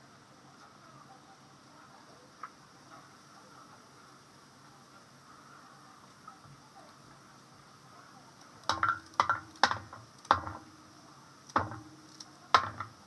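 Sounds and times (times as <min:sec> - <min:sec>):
metal cookware knocking and ringing: 0:08.7 - 0:10.8, 0:11.6 - 0:13.0.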